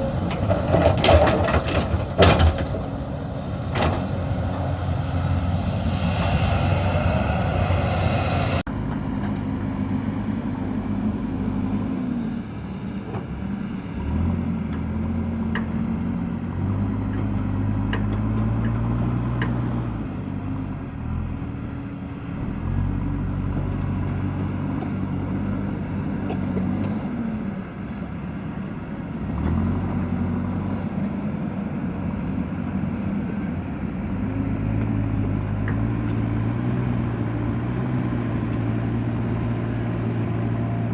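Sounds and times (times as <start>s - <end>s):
diesel engine revving: 0.0s - 12.6s, 28.8s - 40.9s
bright noisy engine sound: 3.0s - 10.0s.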